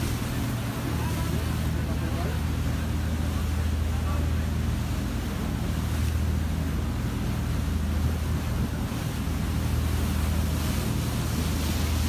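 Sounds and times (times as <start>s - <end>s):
boat engine droning: 0.0s - 12.0s
water rushing past hull: 0.0s - 12.0s
wind on microphone: 7.8s - 12.0s.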